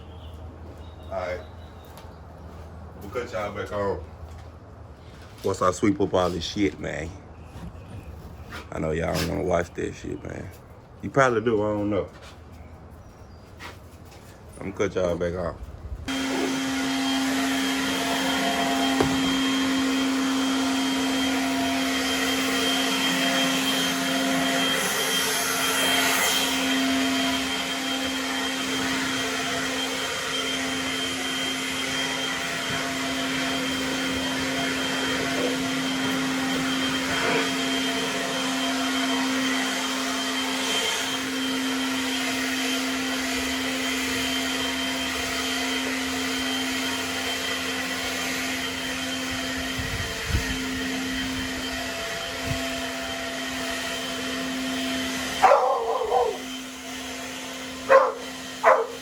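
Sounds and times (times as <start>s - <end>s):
small electric motor humming: 16.1s - 59.0s.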